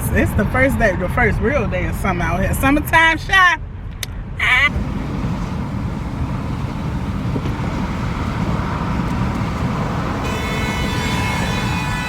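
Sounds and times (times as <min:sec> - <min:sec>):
road noise inside car: 0:04.4 - 0:12.0
wind noise: 0:04.7 - 0:12.0.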